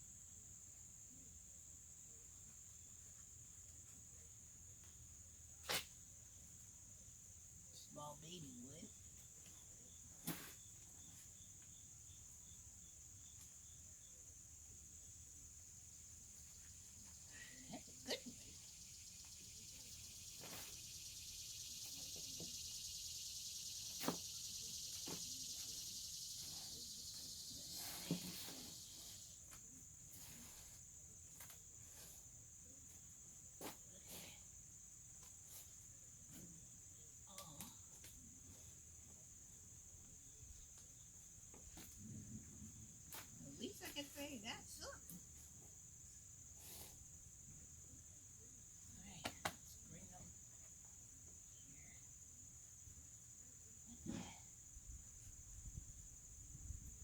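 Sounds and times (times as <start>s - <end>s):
insect drone: 0.0s - 57.0s
pulsing insect chirp: 0.0s - 57.0s.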